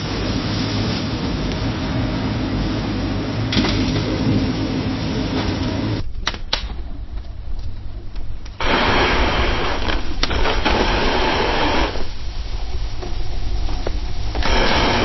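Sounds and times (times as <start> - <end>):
fire crackling in fireplace: 0.0 - 15.0
steady low rumble: 0.0 - 15.0
sharp pops of fire: 3.5 - 4.3, 5.3 - 15.0.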